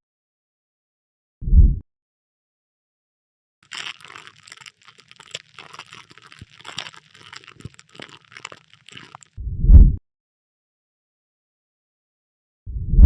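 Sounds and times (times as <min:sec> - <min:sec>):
crunching crackling clicks: 0:03.6 - 0:09.4.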